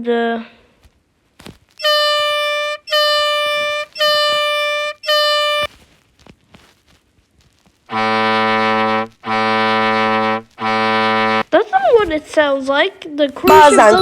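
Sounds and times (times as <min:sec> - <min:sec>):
high-pitched tone blasts: 0:01.8 - 0:05.7, 0:07.9 - 0:11.4
deep horn-like blast: 0:07.9 - 0:11.4.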